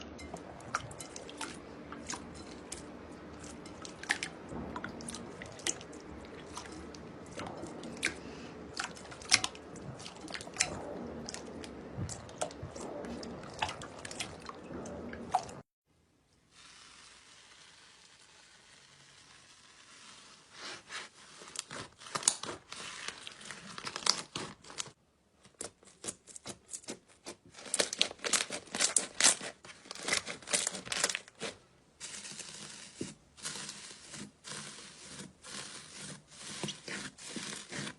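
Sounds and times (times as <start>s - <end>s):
slime wet squishing: 0.0s - 15.6s.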